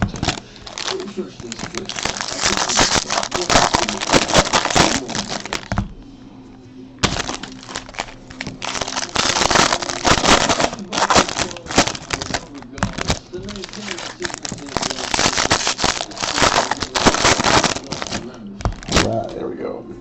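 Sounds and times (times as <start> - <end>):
card packs torn and crinkling: 0.0 - 5.8, 7.0 - 19.4.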